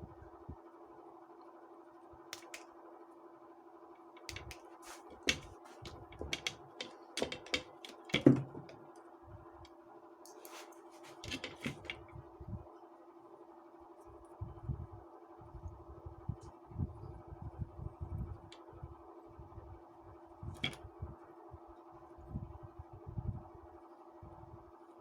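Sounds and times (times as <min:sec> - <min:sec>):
clicks and taps of tools: 0:02.4 - 0:02.6, 0:04.2 - 0:08.8, 0:10.3 - 0:12.0, 0:20.6 - 0:20.8.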